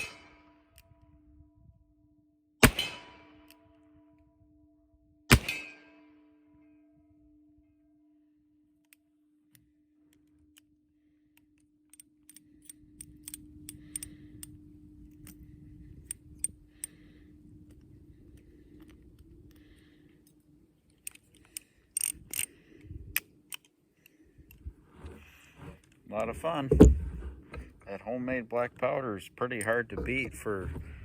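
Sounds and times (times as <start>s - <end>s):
low steady hum: 0.0s - 31.0s
light metallic clicks and rattles: 11.4s - 27.9s, 28.8s - 30.9s.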